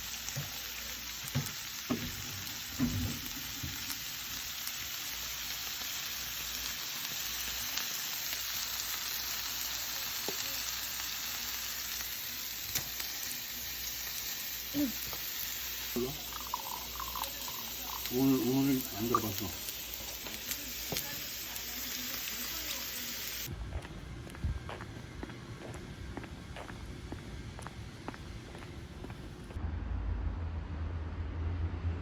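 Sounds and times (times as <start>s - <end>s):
food sizzling in a frying pan: 0.0s - 23.5s.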